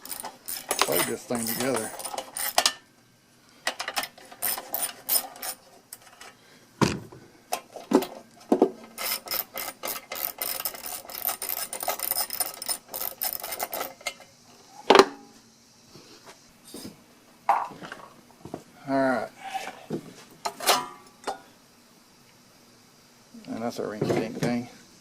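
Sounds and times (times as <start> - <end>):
tools clicking and scraping on metal: 0.0 - 2.9, 3.6 - 6.4, 7.5 - 14.3.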